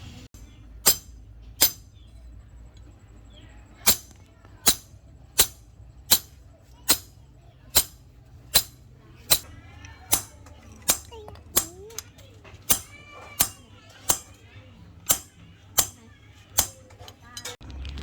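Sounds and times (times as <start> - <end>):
hammer striking steel on anvil: 0.8 - 2.1, 3.8 - 9.5, 10.1 - 11.8, 12.7 - 14.4, 15.1 - 17.1.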